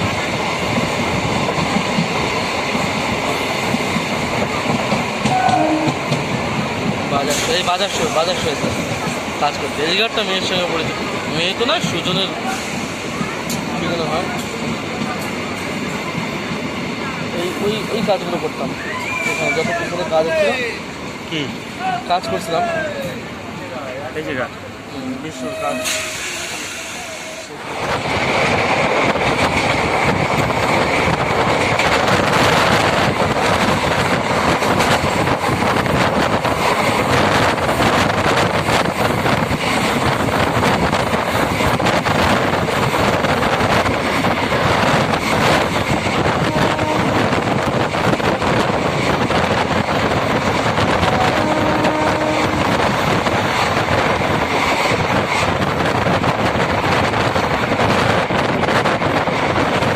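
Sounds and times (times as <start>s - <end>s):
train running noise: 0.0s - 59.9s
wind buffeting microphone: 27.6s - 59.9s.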